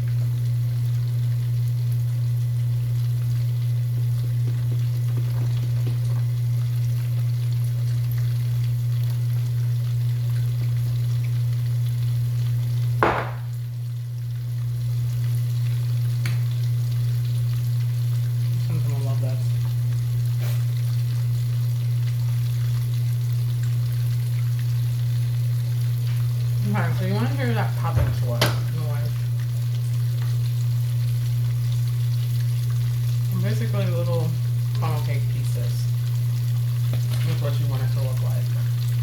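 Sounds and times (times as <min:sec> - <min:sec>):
batter crackling in hot oil: 0:00.0 - 0:39.0
sharp knock: 0:13.0 - 0:13.5.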